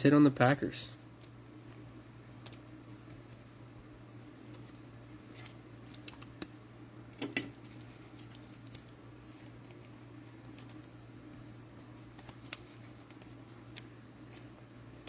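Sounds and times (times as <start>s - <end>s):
steady low hum: 0.0s - 15.0s
cards and wrappers rustling: 4.2s - 6.5s, 7.5s - 14.6s.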